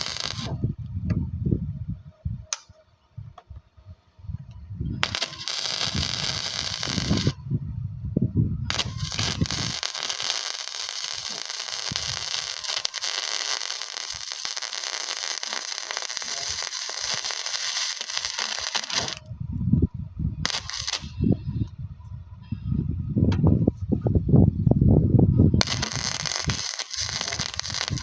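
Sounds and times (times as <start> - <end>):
welding arc crackling: 0.0 - 0.6, 5.0 - 7.4, 8.7 - 19.3, 20.4 - 21.2, 25.6 - 28.0.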